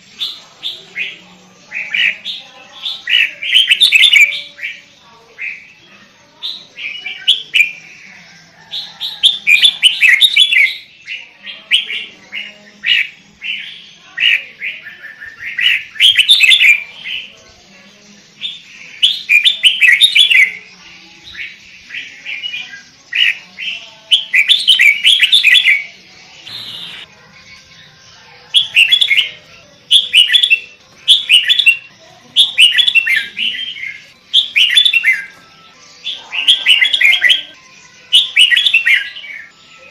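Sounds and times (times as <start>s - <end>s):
bulbul song warbled notes: 26.4s - 27.1s.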